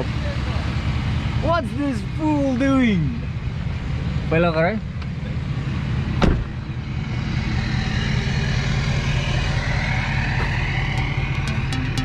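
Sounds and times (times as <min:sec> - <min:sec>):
truck engine rumbling: 0:00.0 - 0:12.0
sharp thump: 0:06.2 - 0:06.7.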